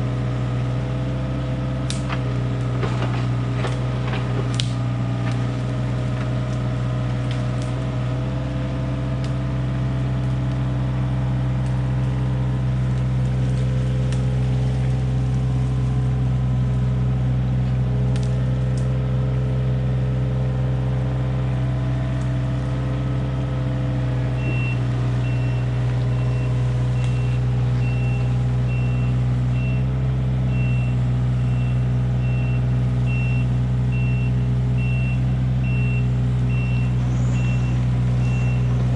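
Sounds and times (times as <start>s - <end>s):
excavator diesel engine running: 0.0s - 38.9s
travel alarm beeping: 24.4s - 29.8s.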